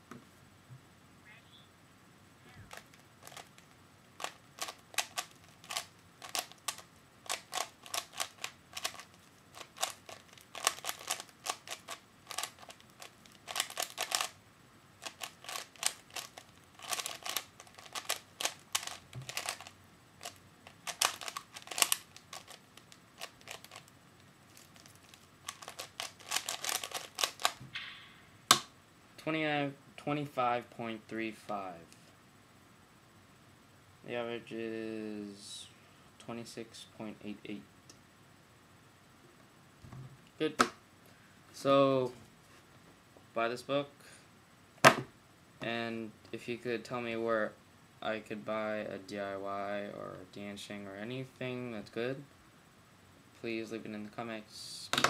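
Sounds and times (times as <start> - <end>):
puzzle cube plastic clicks: 2.7 - 14.4, 15.0 - 23.9, 24.5 - 27.6.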